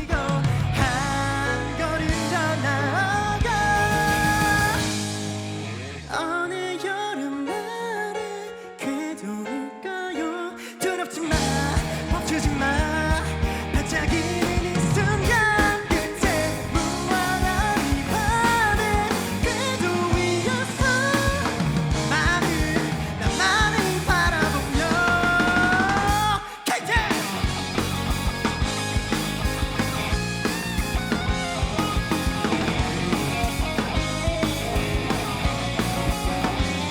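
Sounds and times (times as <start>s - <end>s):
lead vocal singing: 0.0s - 5.2s, 6.1s - 27.5s
rock band playing: 0.0s - 6.7s, 11.3s - 36.9s.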